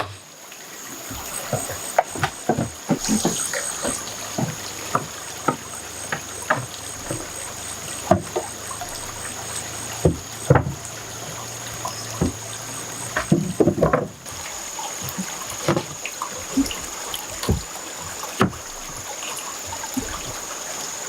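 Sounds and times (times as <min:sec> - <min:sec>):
water splashing and trickling: 0:00.0 - 0:21.0
high-pitched insect drone: 0:00.6 - 0:13.7.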